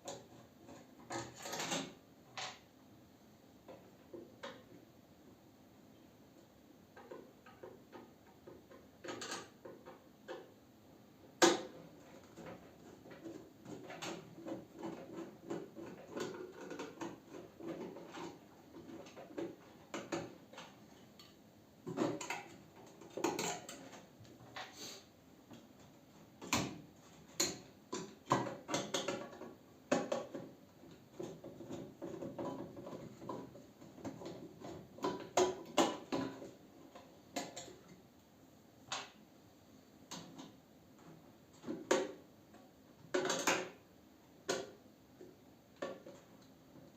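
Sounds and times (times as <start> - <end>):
clicks and knocks of metal parts: 0.1 - 2.6, 7.0 - 10.6, 11.4 - 24.8.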